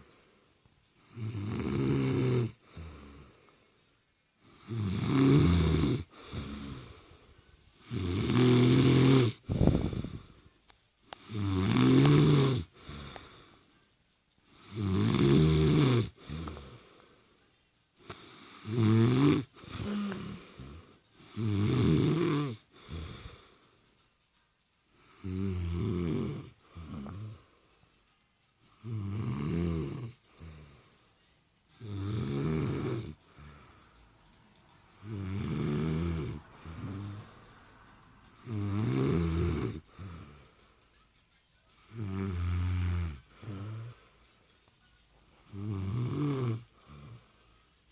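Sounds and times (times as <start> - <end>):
quiet breath: 0.0 - 1.3, 2.5 - 4.8, 6.0 - 8.0, 9.3 - 14.8, 16.1 - 21.5, 22.6 - 25.4, 26.4 - 29.0, 30.1 - 32.0, 32.9 - 39.0, 39.7 - 42.3, 43.1 - 45.6, 46.6 - 47.9
woman snoring: 1.0 - 3.4, 4.4 - 10.5, 11.2 - 13.5, 14.5 - 17.0, 18.0 - 23.5, 25.0 - 27.6, 28.8 - 31.0, 31.8 - 34.0, 34.9 - 40.6, 41.8 - 44.2, 45.4 - 47.5.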